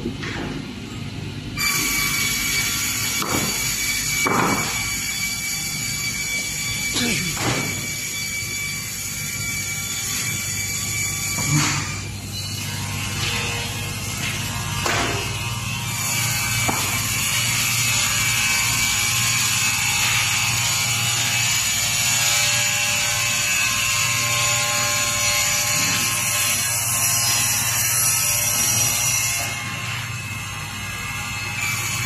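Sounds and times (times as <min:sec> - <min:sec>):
high-pitched sawing noise: 0:01.6 - 0:13.8.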